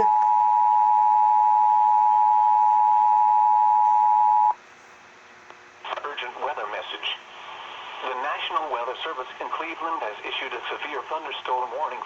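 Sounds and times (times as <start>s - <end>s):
two-tone alarm: 0.0s - 4.6s.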